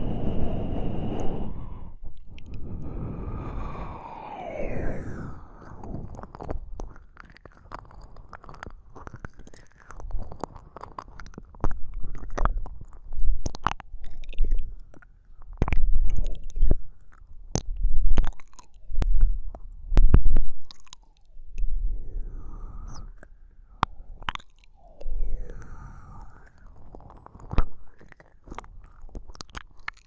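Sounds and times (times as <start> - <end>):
wet mouth clicks and smacks: 1.0 - 4.3, 5.2 - 21.8, 22.9 - 30.0.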